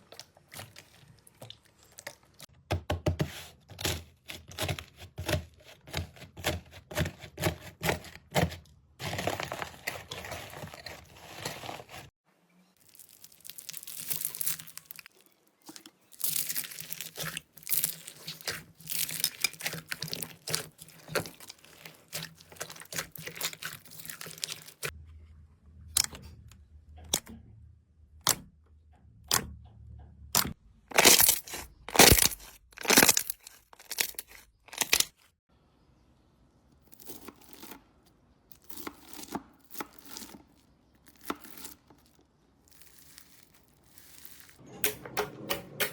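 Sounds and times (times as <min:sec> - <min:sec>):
loud slime crunches: 0:12.8 - 0:24.9, 0:30.9 - 0:35.1, 0:38.6 - 0:44.6
slime crackling and popping: 0:12.8 - 0:24.9, 0:30.4 - 0:35.1.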